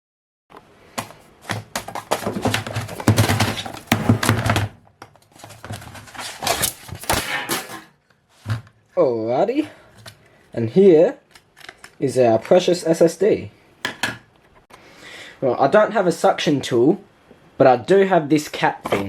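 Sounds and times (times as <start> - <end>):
knocks and scrapes of small hardware: 1.8 - 4.7, 5.5 - 8.7.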